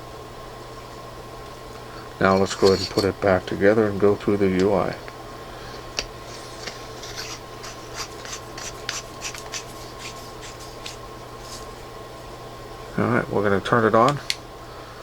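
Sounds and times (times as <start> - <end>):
flashlight threads scraping: 6.2 - 11.7.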